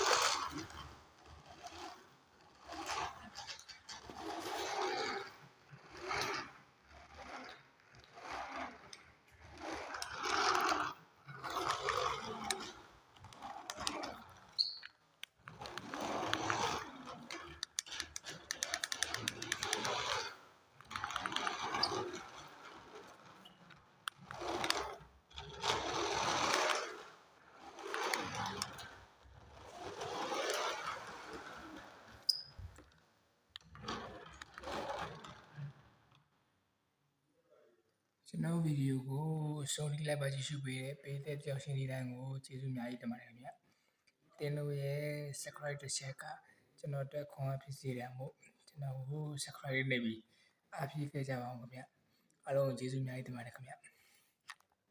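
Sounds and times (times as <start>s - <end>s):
toy car electric motor whirring: 0.0s - 33.0s.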